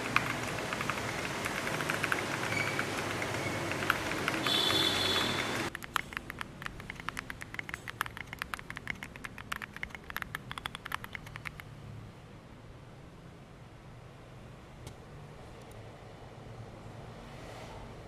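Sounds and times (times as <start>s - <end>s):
mechanical keyboard typing: 0.0s - 11.7s.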